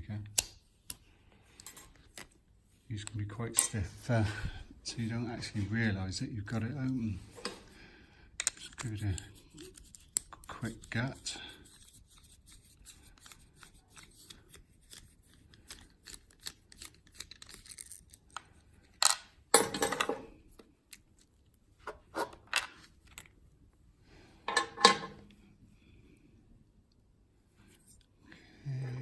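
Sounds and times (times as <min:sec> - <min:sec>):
small metallic clicks and scraping: 0:08.4 - 0:11.0
metal clunks and clinks: 0:24.5 - 0:25.2.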